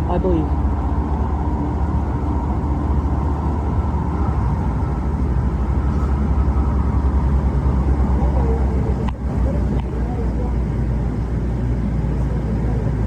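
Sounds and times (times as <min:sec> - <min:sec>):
light-rail car rumble: 0:00.0 - 0:13.0.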